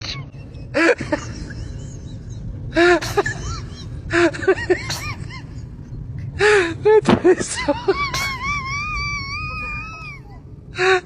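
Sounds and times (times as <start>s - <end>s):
low background rumble: 0.0s - 11.0s
baby crying: 8.2s - 11.0s.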